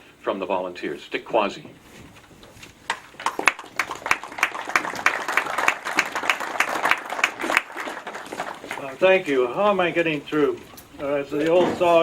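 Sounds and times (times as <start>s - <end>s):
audience applauding: 2.9s - 9.2s.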